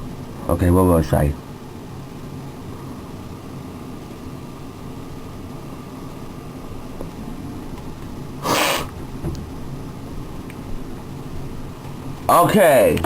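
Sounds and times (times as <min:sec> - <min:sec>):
low background hum: 0:00.0 - 0:13.0
rush of hissing noise: 0:00.0 - 0:13.0.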